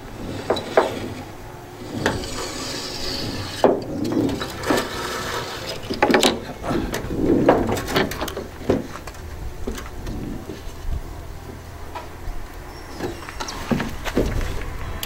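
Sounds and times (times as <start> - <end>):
scraping and rubbing on glass: 0.0 - 11.0.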